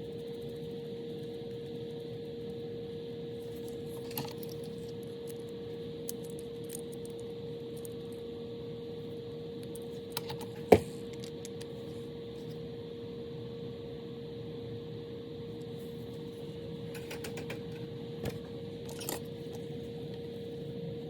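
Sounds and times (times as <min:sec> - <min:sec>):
steady hum: 0:00.0 - 0:21.0
small parts clicking and tapping: 0:16.9 - 0:19.6.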